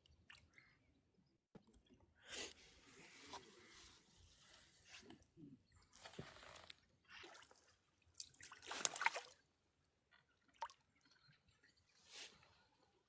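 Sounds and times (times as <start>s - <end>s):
water splashing and sloshing: 5.9s - 13.0s.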